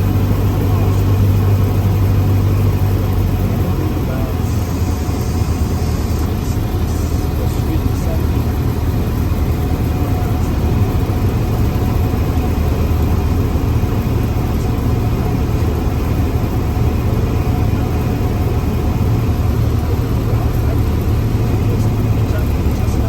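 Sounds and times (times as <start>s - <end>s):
small plane engine droning: 0.0s - 23.0s.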